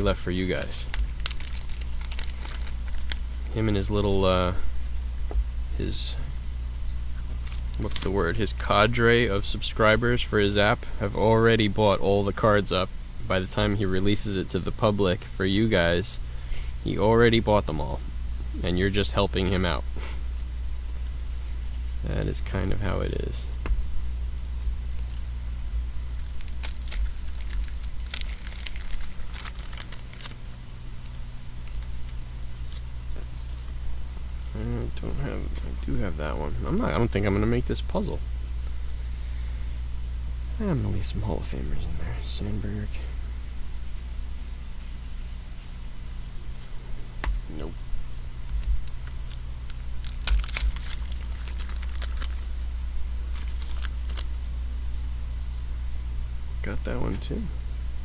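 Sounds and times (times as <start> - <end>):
trading cards clicking and rustling: 0.0 - 4.1, 7.4 - 8.4, 26.1 - 30.5, 48.5 - 52.5, 53.3 - 54.3
steady low hum: 0.0 - 58.0
trading cards clicking and snapping: 26.1 - 30.4, 50.0 - 52.4.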